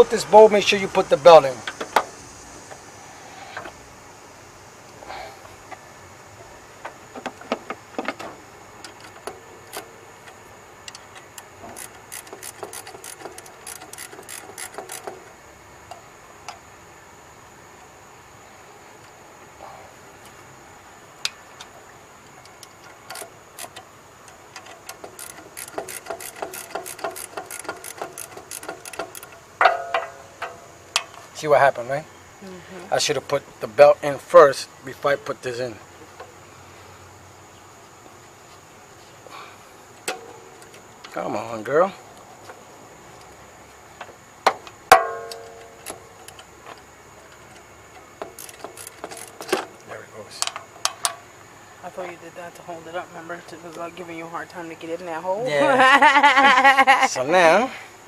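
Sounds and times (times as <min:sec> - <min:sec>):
ratchet clicking: 0:08.8 - 0:15.3, 0:22.4 - 0:31.1, 0:47.3 - 0:49.6
metal-on-metal knocks: 0:25.7 - 0:31.2, 0:44.5 - 0:46.0
loud metal clang ringing: 0:44.9 - 0:45.7.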